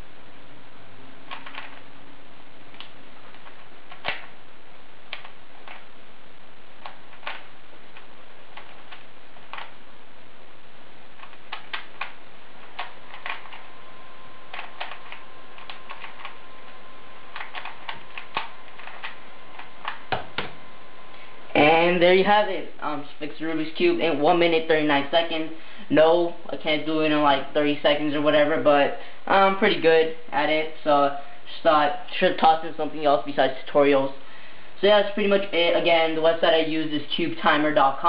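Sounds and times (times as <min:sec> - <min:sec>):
steady hiss: 0:00.0 - 0:38.0
puzzle cube layers clicking: 0:01.2 - 0:01.9, 0:02.7 - 0:04.4, 0:05.1 - 0:05.9, 0:06.8 - 0:09.8, 0:11.2 - 0:13.7, 0:14.5 - 0:16.4, 0:17.3 - 0:20.5.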